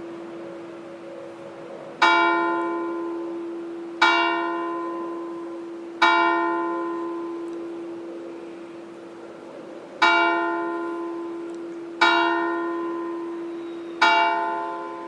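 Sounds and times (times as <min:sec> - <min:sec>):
church bell tolling: 0:02.0 - 0:09.0, 0:10.0 - 0:15.0.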